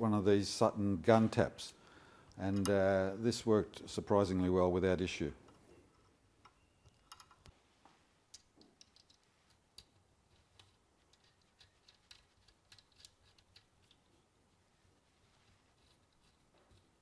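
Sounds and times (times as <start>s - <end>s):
faint small clicks and ticks: 8.3s - 14.2s.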